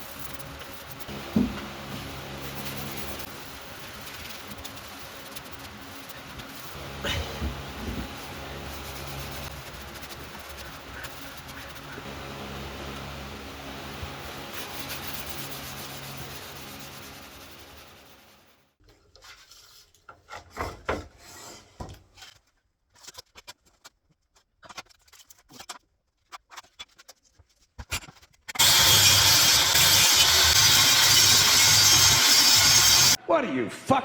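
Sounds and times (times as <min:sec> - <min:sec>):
power tool running: 0:00.7 - 0:18.5, 0:28.6 - 0:33.2
low hum: 0:00.9 - 0:18.5
scraping and rubbing on wood: 0:07.4 - 0:12.1.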